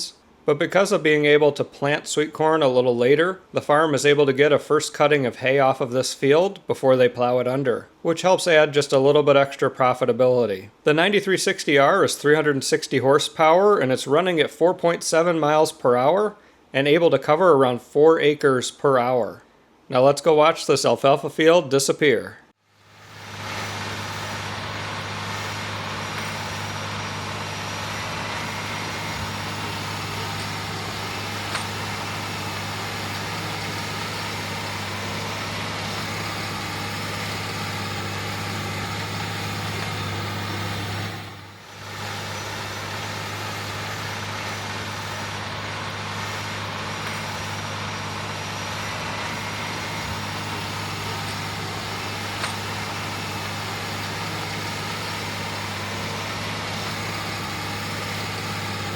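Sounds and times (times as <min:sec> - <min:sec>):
tractor diesel engine under load: 0:22.8 - 0:58.9.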